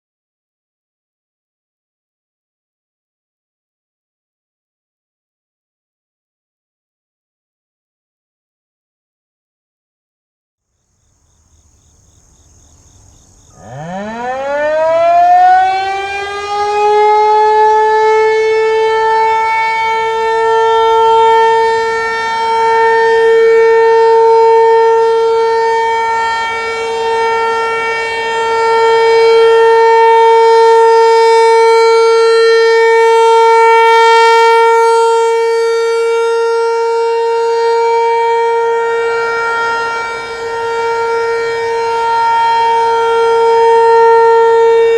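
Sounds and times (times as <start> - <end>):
rotating warning siren: 11.1 - 44.9.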